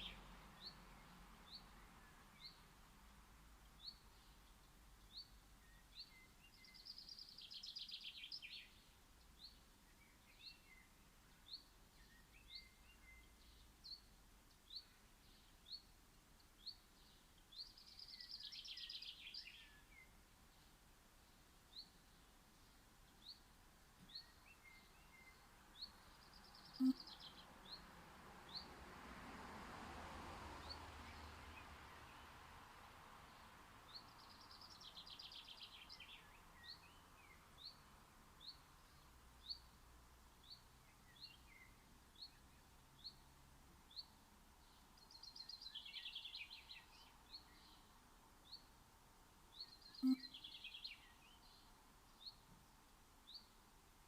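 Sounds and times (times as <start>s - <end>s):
bird chirping high: 26.6s - 27.4s, 49.8s - 51.2s
bird warbling: 26.8s - 27.1s, 50.0s - 50.5s.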